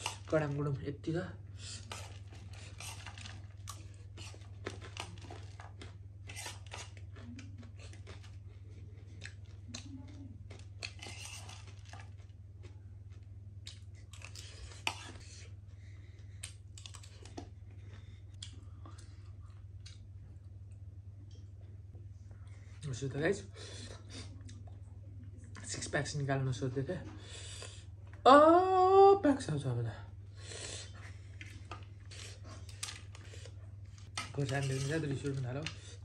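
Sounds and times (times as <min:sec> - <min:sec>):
steady low hum: 0:00.0 - 0:36.0
chewing and mouth smacks: 0:01.8 - 0:15.4, 0:16.4 - 0:21.5.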